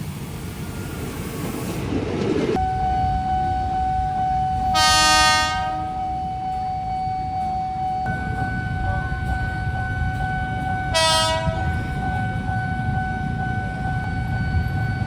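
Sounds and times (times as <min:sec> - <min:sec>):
train rumbling: 0:00.0 - 0:15.0
electric train horn: 0:02.6 - 0:14.0.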